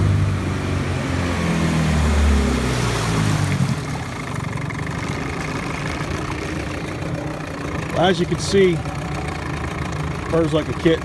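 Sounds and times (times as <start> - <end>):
outboard motor running: 0.0 - 11.0.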